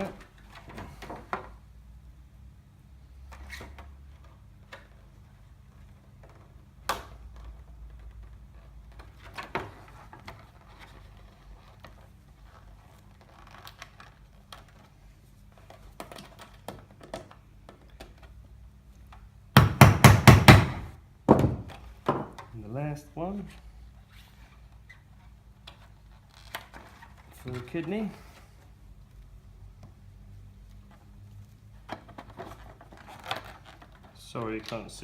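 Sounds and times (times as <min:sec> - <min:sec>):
loud hammer strikes: 0:19.6 - 0:21.6.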